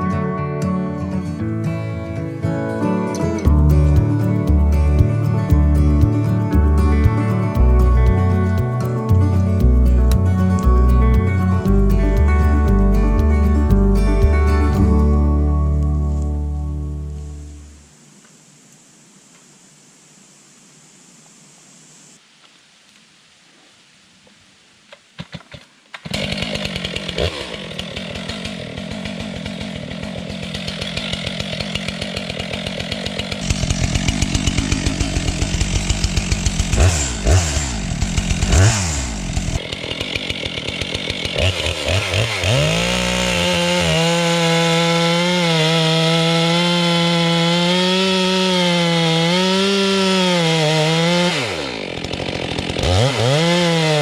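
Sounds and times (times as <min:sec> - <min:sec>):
chainsaw revving: 0:25.9 - 0:54.0.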